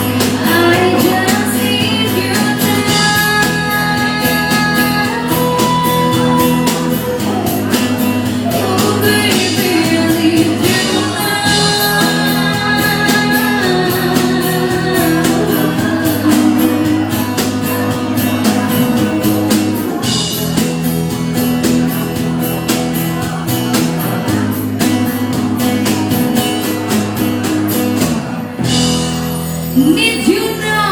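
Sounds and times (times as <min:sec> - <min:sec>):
person singing: 0:00.0 - 0:20.0
live ska band playing: 0:00.0 - 0:30.9.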